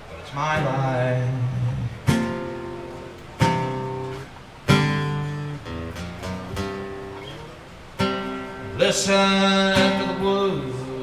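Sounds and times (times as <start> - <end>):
acoustic guitar: 0.0 - 11.0.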